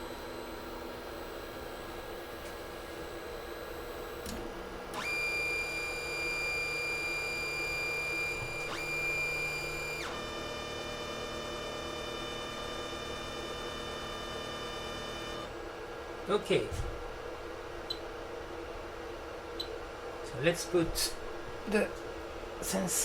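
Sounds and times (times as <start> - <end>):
steady hum: 0.0 - 10.4
stepper motors whining: 4.2 - 15.5.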